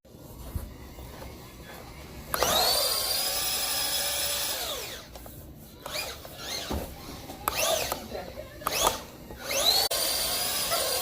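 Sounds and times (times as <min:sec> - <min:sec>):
toy truck electric motor whining: 0:02.3 - 0:05.2, 0:05.8 - 0:11.0.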